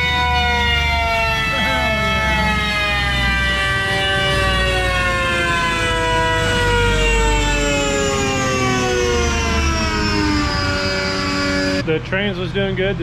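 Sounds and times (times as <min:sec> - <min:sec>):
car engine whine falling in pitch: 0:00.8 - 0:11.8.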